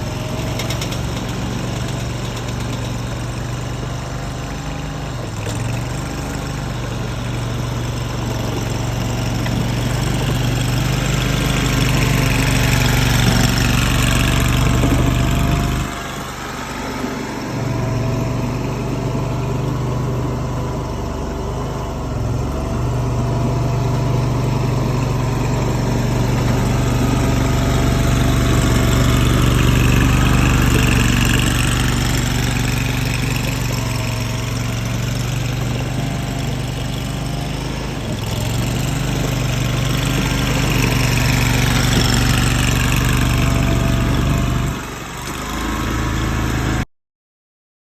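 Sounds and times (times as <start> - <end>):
skid steer engine running: 0.0 - 46.9.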